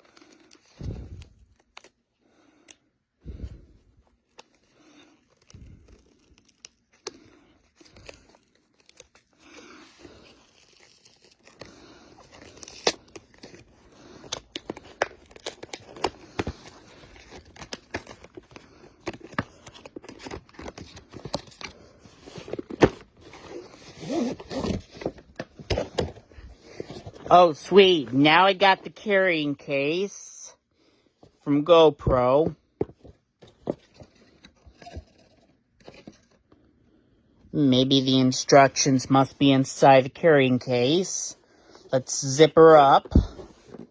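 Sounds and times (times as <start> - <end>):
packaging crinkling and tearing: 0.0 - 2.8, 4.1 - 27.4.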